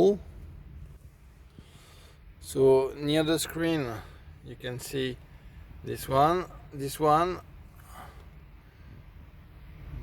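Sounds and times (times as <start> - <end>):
low background rumble: 0.0 - 10.0.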